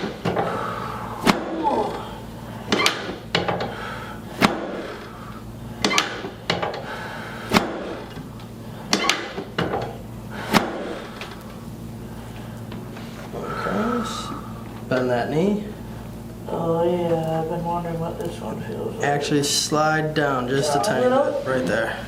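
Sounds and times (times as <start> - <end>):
sharp knocks: 7.5 - 8.0.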